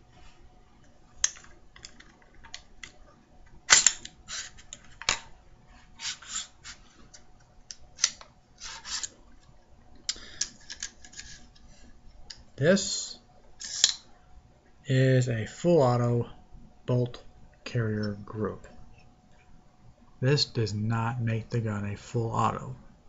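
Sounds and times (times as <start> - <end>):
metal parts sliding and clacking: 3.7 - 5.3, 5.9 - 7.2, 8.0 - 9.2, 10.3 - 11.9, 13.6 - 14.0.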